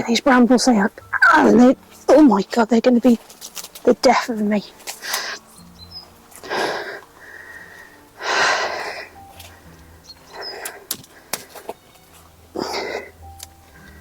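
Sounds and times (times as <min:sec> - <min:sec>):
heavy huffing breaths: 0:04.6 - 0:14.0.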